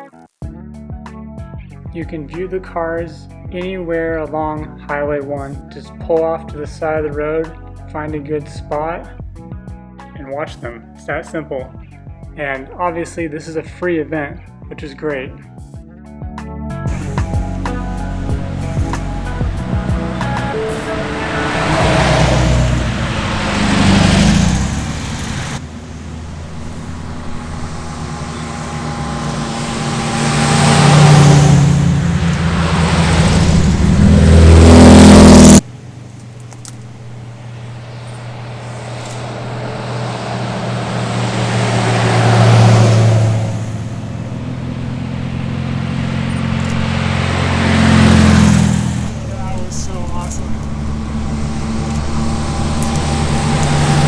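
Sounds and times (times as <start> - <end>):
cars passing by: 16.9 - 54.0.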